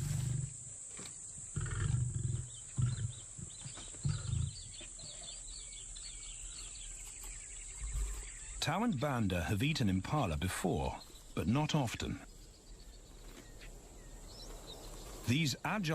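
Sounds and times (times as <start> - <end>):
birds chirping: 0.0 - 15.9
lion growling: 1.5 - 5.4.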